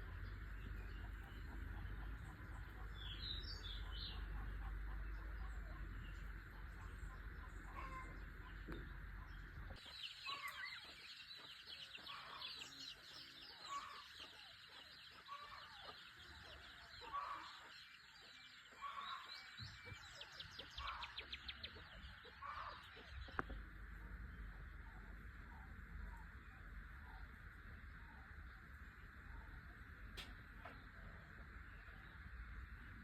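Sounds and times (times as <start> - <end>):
small birds chirping: 0.0 - 33.0
chickens clucking softly: 3.8 - 10.6.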